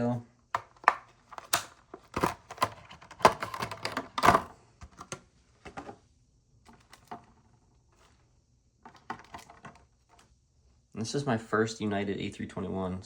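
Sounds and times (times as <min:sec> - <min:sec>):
packaging clicks and scrapes: 0:00.6 - 0:06.0, 0:08.9 - 0:10.2.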